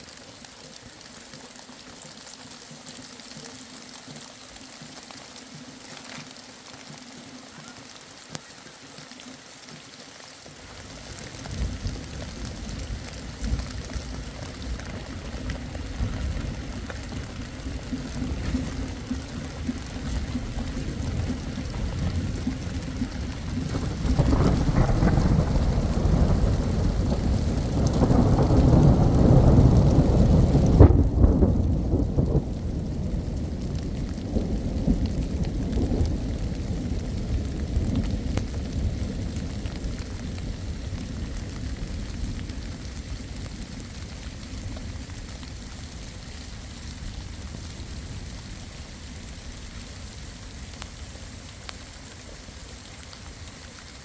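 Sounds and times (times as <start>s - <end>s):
rain: 0.0s - 54.0s
deep rumble: 10.9s - 49.7s.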